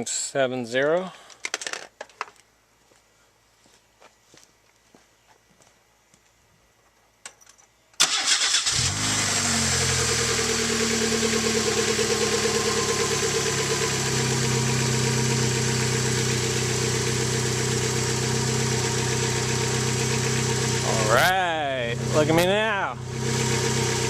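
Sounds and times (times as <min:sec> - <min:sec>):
car engine cranking and idling: 0:08.0 - 0:24.0.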